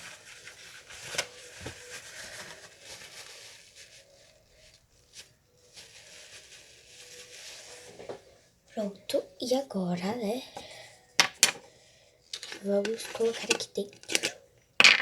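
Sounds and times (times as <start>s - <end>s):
rustling handling noise: 0.0s - 15.0s.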